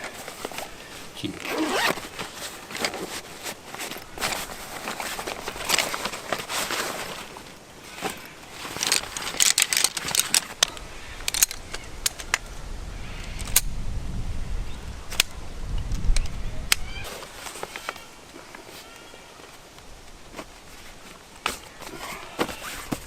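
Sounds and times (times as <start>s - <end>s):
metal gear clicking and clinking: 8.1s - 12.2s
wind rumble on microphone: 10.8s - 17.1s.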